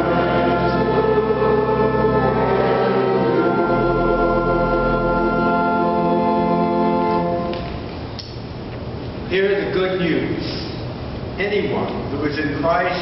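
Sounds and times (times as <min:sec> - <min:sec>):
organ playing sustained chords: 0:00.0 - 0:08.0.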